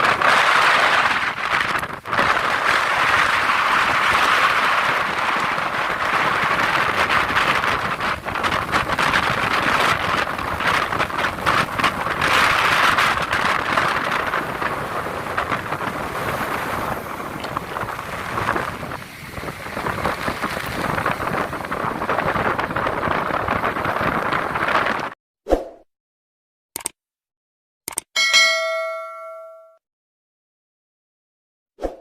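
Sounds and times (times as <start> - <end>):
storm wind gusting on microphone: 0.0 - 25.2.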